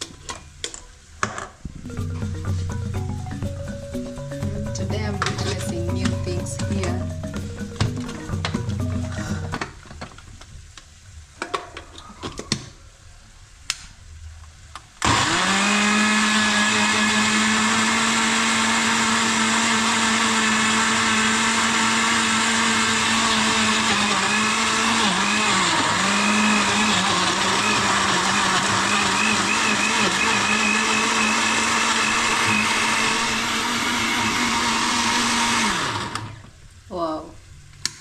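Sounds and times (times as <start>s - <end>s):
blender running: 15.0s - 36.5s.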